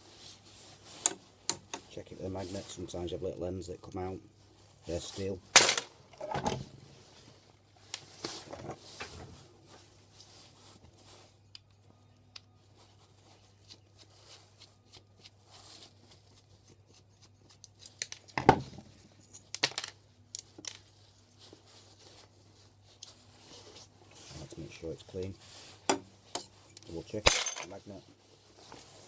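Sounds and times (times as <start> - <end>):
metal parts clicking and scraping: 26.3 - 27.8.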